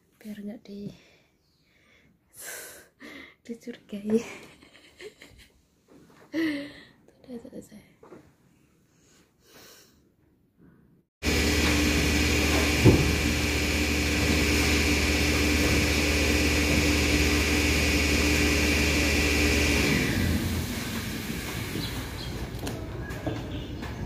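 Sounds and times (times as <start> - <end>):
machine humming and whining: 11.2 - 23.9.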